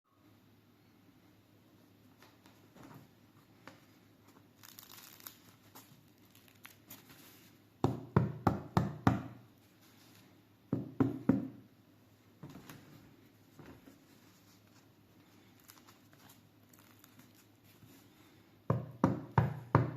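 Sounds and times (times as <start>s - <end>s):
bread crust crackling: 4.4s - 7.4s, 15.4s - 17.7s.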